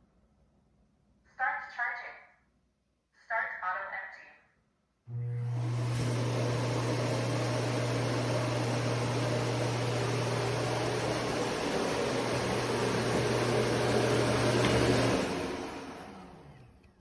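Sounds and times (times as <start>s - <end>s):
suction fan rushing air: 5.4s - 16.6s.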